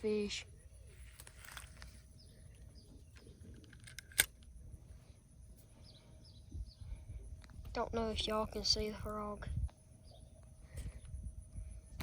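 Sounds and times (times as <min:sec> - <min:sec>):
faint bird chirps: 0:00.0 - 0:03.8, 0:04.7 - 0:07.6, 0:09.8 - 0:11.3
sharp click: 0:03.6 - 0:04.5
wind rumble on microphone: 0:06.0 - 0:12.0.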